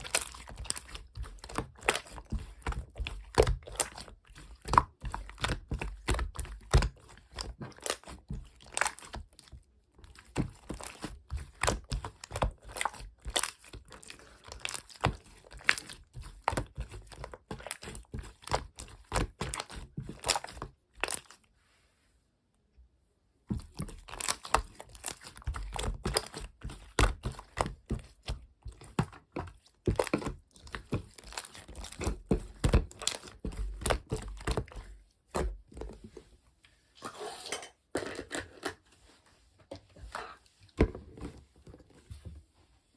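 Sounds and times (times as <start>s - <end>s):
dense crinkling and crunching: 0.0s - 21.6s, 23.5s - 36.2s.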